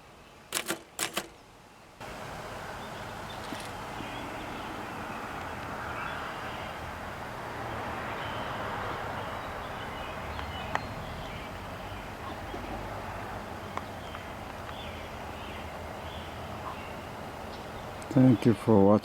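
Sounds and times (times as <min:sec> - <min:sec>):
sharp click: 0:00.5 - 0:01.4.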